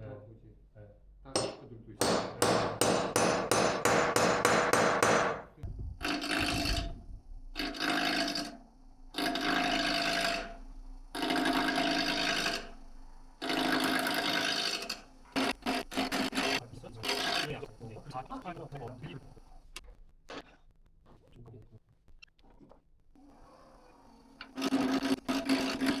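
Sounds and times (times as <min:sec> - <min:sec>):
hand tool rasping on wood: 0:02.0 - 0:05.4, 0:13.5 - 0:17.6.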